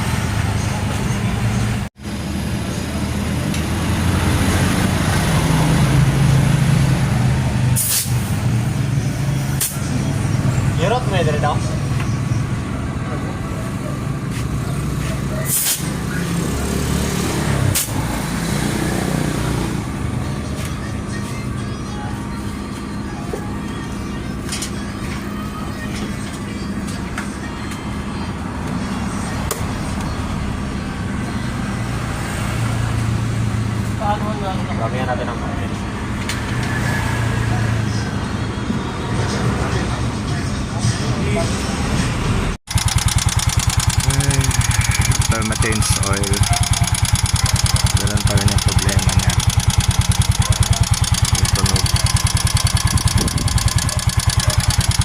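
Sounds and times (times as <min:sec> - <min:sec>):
motorcycle engine running: 0:42.7 - 0:55.0
sharp clicks: 0:42.7 - 0:55.0.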